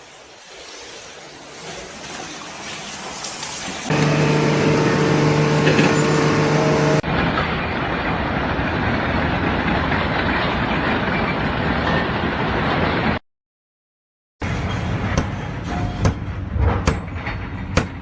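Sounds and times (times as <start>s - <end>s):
loud rushing machinery noise: 3.9s - 7.0s
machine low hum: 3.9s - 7.0s.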